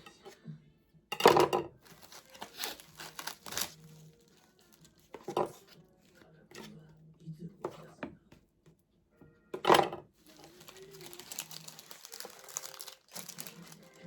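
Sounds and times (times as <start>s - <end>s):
crinkling and tearing: 1.8s - 5.8s, 10.2s - 14.0s.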